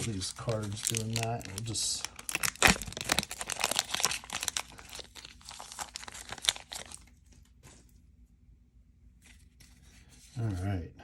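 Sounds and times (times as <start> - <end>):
wrapper crinkling and tearing: 0.0 - 7.8.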